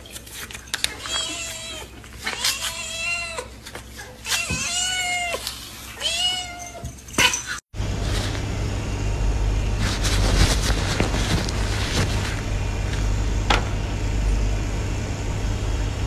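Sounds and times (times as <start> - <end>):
steady low rumble: 7.8 - 16.0.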